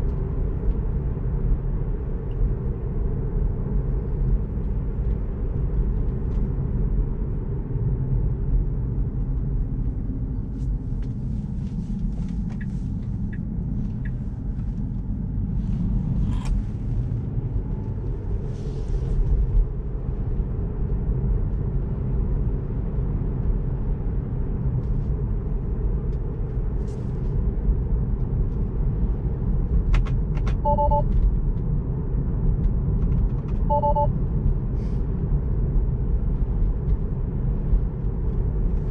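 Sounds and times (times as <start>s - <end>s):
road and tyre rumble: 0.0s - 38.9s
short two-note beeps: 30.7s - 31.0s, 33.7s - 34.1s.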